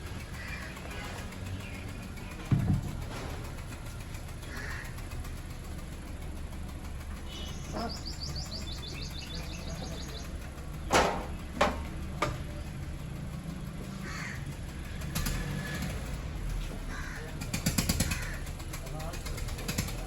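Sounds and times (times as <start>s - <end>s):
car engine idling: 0.0s - 20.0s
sharp knocks: 2.4s - 3.4s, 10.9s - 12.4s
high bird trill: 7.3s - 10.5s.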